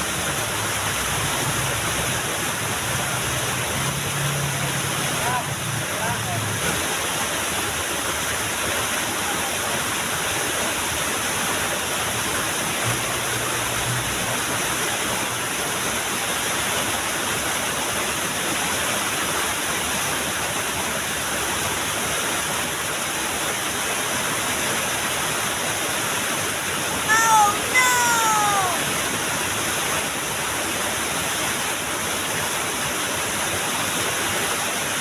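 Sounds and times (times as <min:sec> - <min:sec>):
water rushing over waterfall: 0:00.0 - 0:35.0.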